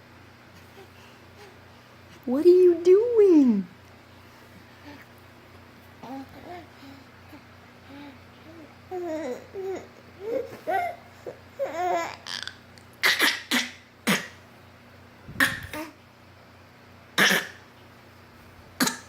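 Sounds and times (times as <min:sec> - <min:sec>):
baby babbling: 0:06.0 - 0:06.7, 0:07.9 - 0:12.6
baby fake coughing: 0:13.0 - 0:14.4, 0:15.4 - 0:16.0, 0:17.2 - 0:17.6, 0:18.8 - 0:19.0.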